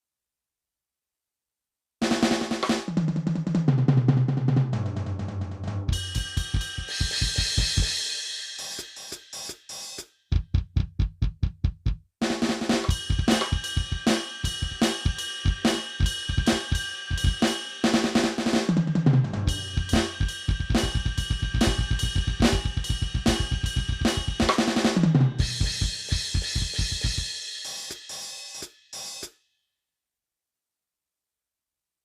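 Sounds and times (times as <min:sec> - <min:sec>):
tom drum fill: 0:02.0 - 0:08.0, 0:10.3 - 0:27.3
drum beat with cymbals and snare: 0:02.0 - 0:29.4
bass drum hits: 0:19.4 - 0:24.4
cymbal crash: 0:19.5 - 0:26.4.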